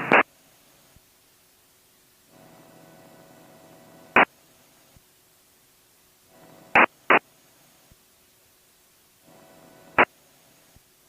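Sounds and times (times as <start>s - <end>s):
radio static bursts: 0.0s - 1.1s, 2.2s - 5.1s, 6.2s - 8.0s, 9.1s - 11.0s
radio carrier hum with tones: 0.0s - 11.0s.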